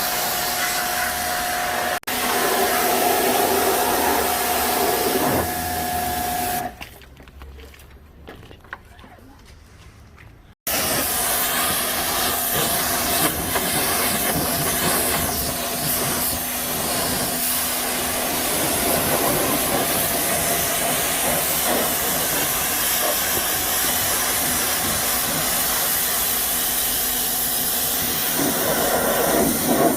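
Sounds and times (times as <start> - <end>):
cleaning spray hissing: 10.7 - 29.9.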